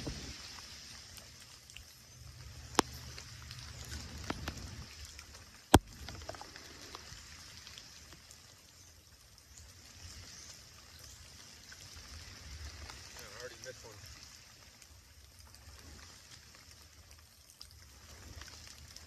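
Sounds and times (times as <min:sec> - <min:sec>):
rain drops ticking: 0:00.0 - 0:19.0.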